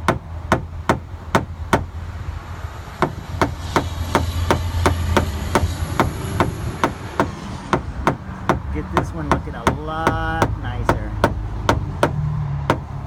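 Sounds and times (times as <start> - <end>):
tool tapping sheet metal: 0.0 - 1.9, 3.0 - 13.0.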